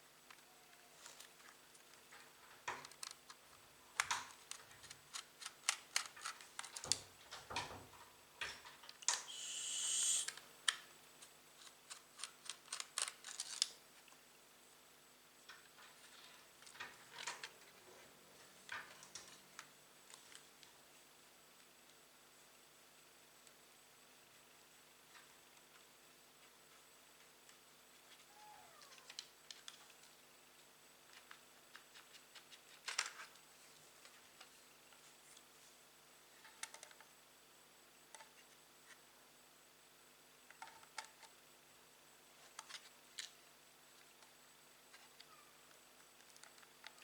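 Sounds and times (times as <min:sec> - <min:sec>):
small clicks and taps of parts: 0:01.0 - 0:03.4, 0:04.0 - 0:09.3, 0:10.3 - 0:14.2, 0:28.8 - 0:33.4, 0:36.4 - 0:37.1, 0:40.5 - 0:41.4, 0:42.4 - 0:43.4, 0:44.0 - 0:47.0.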